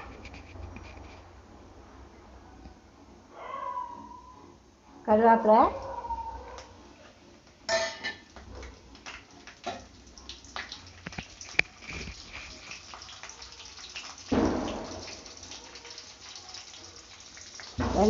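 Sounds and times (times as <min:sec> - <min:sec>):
spices crackling in hot oil: 0:07.9 - 0:18.0.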